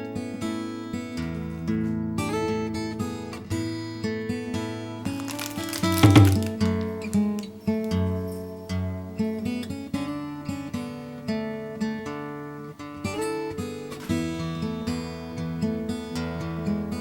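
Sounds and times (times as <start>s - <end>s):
acoustic guitar tune: 4.5s - 17.0s.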